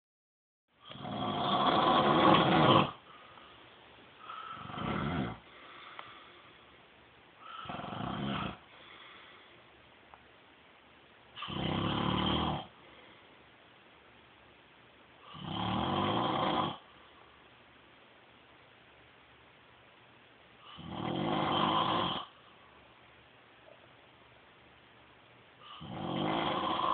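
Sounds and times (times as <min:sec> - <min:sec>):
man snoring: 0:00.8 - 0:03.0, 0:04.4 - 0:05.5, 0:07.5 - 0:08.7, 0:11.4 - 0:12.8, 0:15.3 - 0:16.8, 0:20.7 - 0:22.4, 0:25.7 - 0:26.9.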